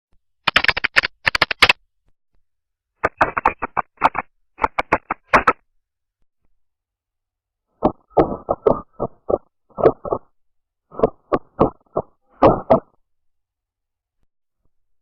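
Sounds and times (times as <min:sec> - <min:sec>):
keyboard typing clicks: 0:00.5 - 0:01.8.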